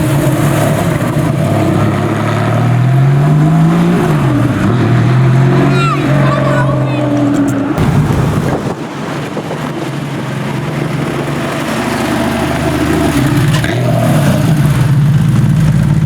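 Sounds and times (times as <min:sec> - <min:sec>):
car engine running at low revs: 0:00.0 - 0:16.0.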